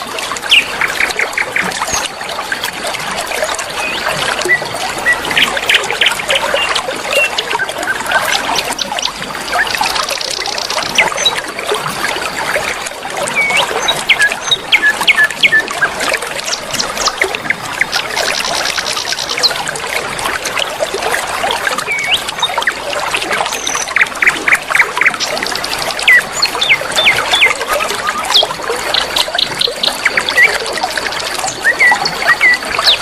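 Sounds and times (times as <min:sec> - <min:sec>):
river water flowing: 0:00.0 - 0:33.0
birds chirping and whistling: 0:00.5 - 0:02.1, 0:03.8 - 0:11.4, 0:13.3 - 0:19.5, 0:21.9 - 0:22.6, 0:26.0 - 0:28.5, 0:31.5 - 0:33.0.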